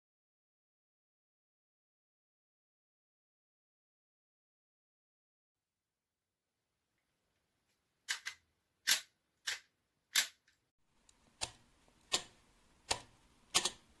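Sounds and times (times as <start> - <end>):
sharp clicks: 11.1 - 13.8.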